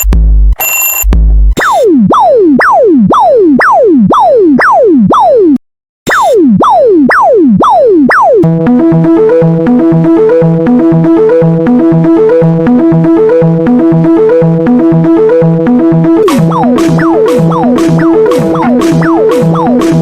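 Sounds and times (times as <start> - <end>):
synthesizer keyboard tune with beat: 8.1 - 20.0.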